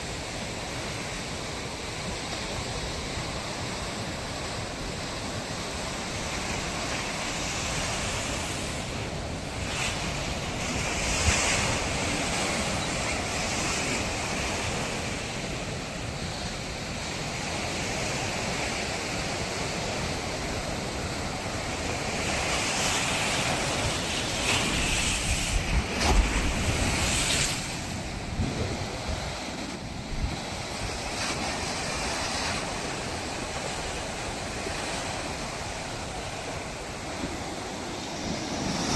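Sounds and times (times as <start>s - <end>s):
ocean surf breaking on beach: 0.0s - 38.9s
wind buffeting microphone: 19.1s - 38.9s.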